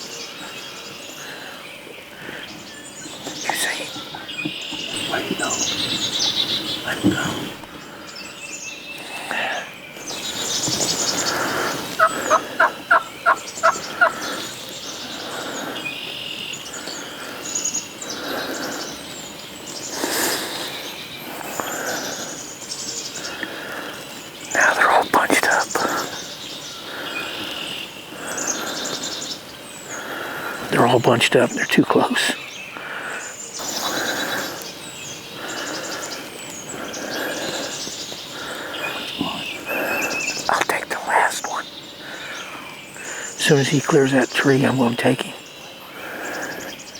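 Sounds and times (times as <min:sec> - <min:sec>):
songbirds chirping: 0:00.0 - 0:46.9
wild turkeys calling: 0:02.1 - 0:08.1, 0:08.9 - 0:17.4, 0:23.1 - 0:46.8
high bird chirps: 0:10.0 - 0:14.6.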